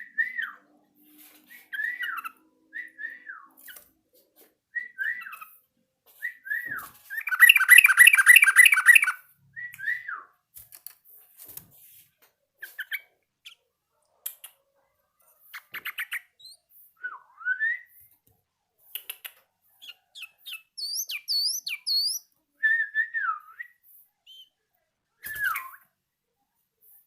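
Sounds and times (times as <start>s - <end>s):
bird chirps and whistles: 6.4s - 9.2s, 20.2s - 23.6s.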